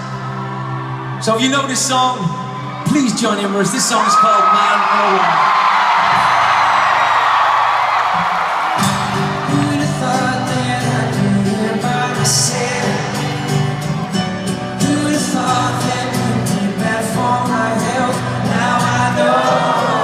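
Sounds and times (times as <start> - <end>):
pop-rock band playing: 8.6 - 20.0
person singing: 9.2 - 13.8, 14.7 - 20.0.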